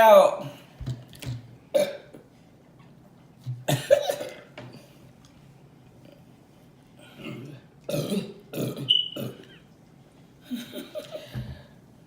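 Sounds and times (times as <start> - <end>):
woman burping: 1.8 - 2.2, 7.2 - 9.6.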